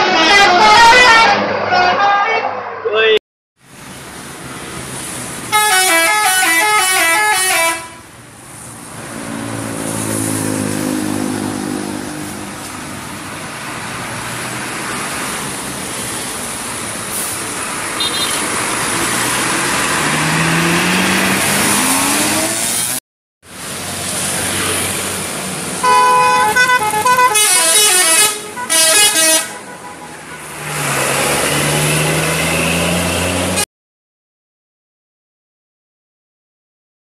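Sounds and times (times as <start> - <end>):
bus multi-tone horn: 0.0 - 2.3, 5.5 - 8.1, 18.0 - 18.6, 25.8 - 30.6.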